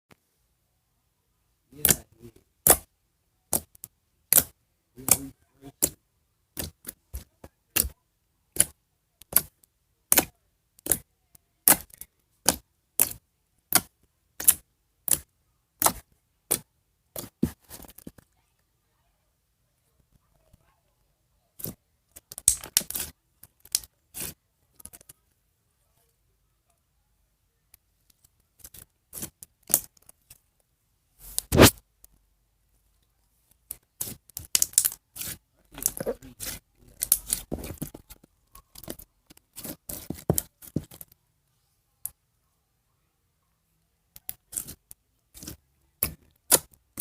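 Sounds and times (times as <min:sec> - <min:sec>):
scraping and rustling handling noises: 0:17.2 - 0:18.3, 0:33.4 - 0:41.2.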